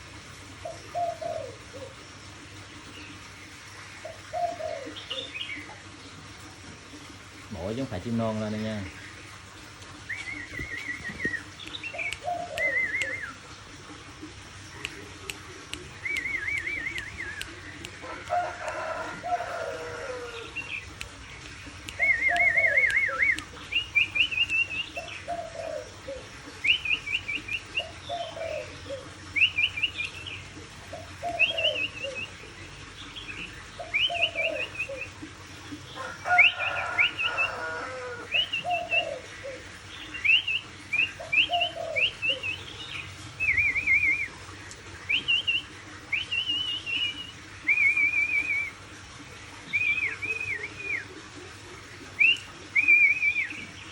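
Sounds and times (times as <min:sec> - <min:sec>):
songbird whistling and trilling: 0:10.1 - 0:13.4, 0:16.0 - 0:18.0, 0:21.9 - 0:25.6, 0:26.6 - 0:28.8, 0:29.4 - 0:30.3, 0:33.8 - 0:35.2, 0:40.0 - 0:44.4, 0:45.1 - 0:48.8, 0:49.7 - 0:51.1, 0:52.2 - 0:53.8.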